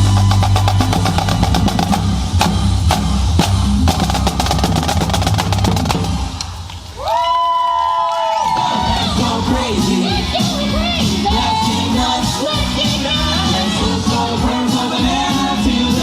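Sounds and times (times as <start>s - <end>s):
rapid snare drum strokes: 0.0s - 6.7s
steady bass drum beat: 0.0s - 6.7s, 8.6s - 16.0s.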